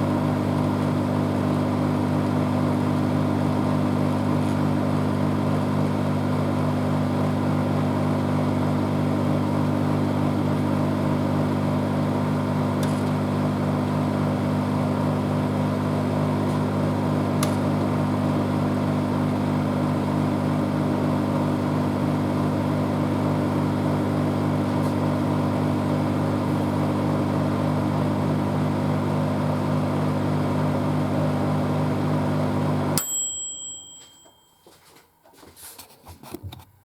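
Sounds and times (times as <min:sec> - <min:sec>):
microwave oven humming: 0:00.0 - 0:35.4
microwave beep: 0:31.5 - 0:34.9.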